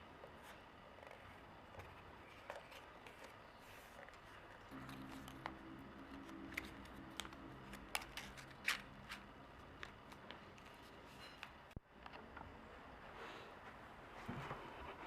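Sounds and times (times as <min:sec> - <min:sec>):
faint low hum: 0:00.0 - 0:15.0
paper folding and creasing: 0:00.4 - 0:11.6.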